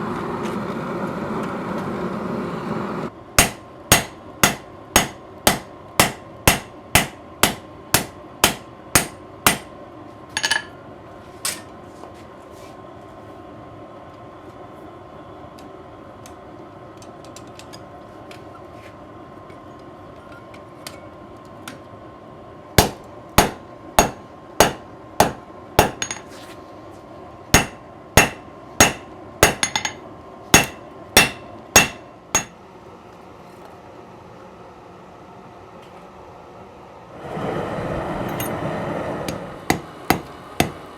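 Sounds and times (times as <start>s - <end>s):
hammer ringing on anvil: 3.4s - 9.7s, 22.8s - 26.2s, 27.6s - 30.0s, 30.6s - 32.6s.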